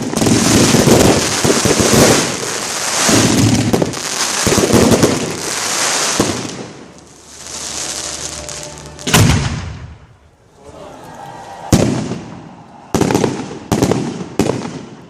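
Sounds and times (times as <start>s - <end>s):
fireworks launching and bursting: 0.0s - 10.2s, 11.7s - 15.0s
loud bang: 7.9s - 10.2s.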